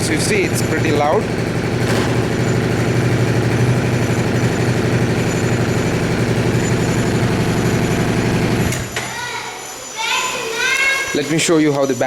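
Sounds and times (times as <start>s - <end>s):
motorcycle engine idling: 0.0s - 8.9s.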